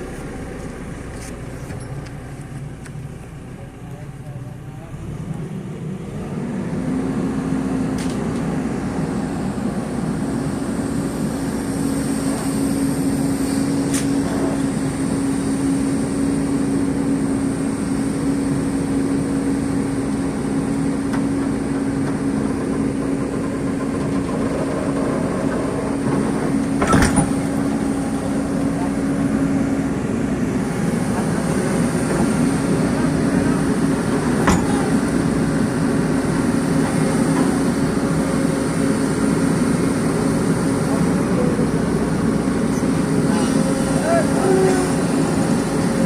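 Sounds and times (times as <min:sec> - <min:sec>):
excavator diesel engine revving: 0:00.0 - 0:46.0.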